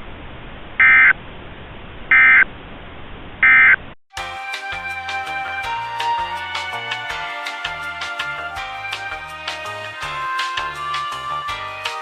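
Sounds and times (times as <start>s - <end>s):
music: 4.1s - 12.0s.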